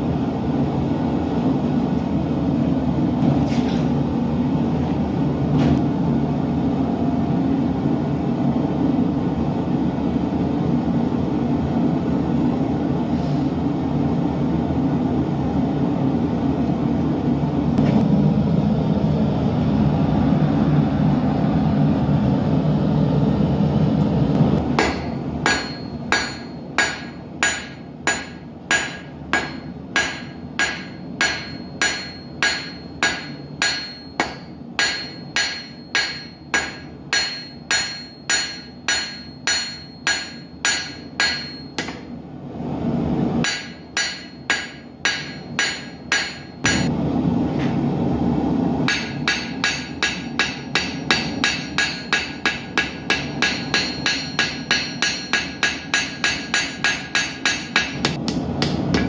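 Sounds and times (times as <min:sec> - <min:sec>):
hammer striking steel on anvil: 0:24.7 - 0:42.2, 0:43.4 - 0:46.9, 0:48.8 - 0:59.0.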